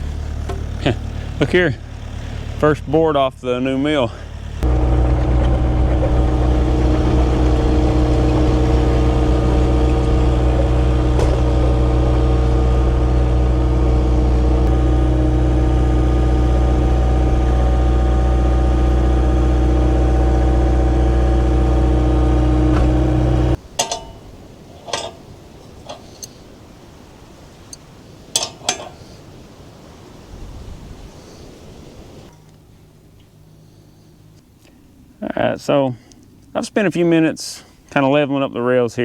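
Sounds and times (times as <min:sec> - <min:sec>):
sawmill engine running: 0:00.0 - 0:23.6.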